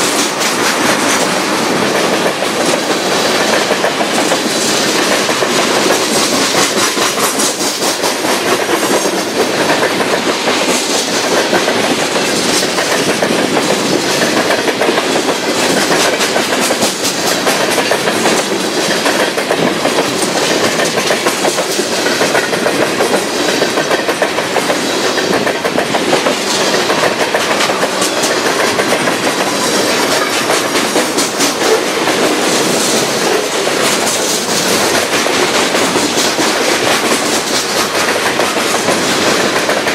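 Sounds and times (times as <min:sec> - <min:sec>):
train wheels rumbling on rails: 0:00.0 - 0:39.9
wheels clacking over rail joints: 0:00.0 - 0:39.9.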